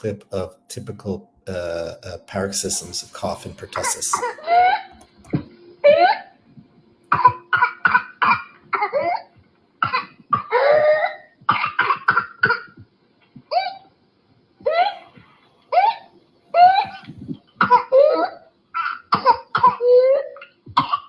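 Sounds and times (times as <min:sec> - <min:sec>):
child coughing: 0:03.8 - 0:04.4, 0:07.1 - 0:09.2, 0:09.8 - 0:10.8, 0:11.5 - 0:12.7, 0:17.6 - 0:18.0, 0:18.8 - 0:20.0, 0:20.8 - 0:21.0.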